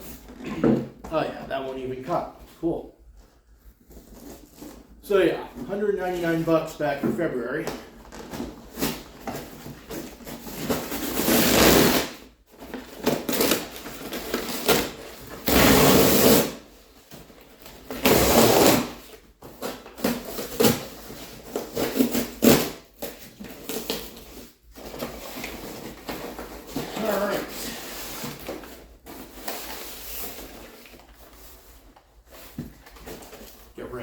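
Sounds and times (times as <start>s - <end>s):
cardboard ripping and scraping: 8.1s - 33.6s.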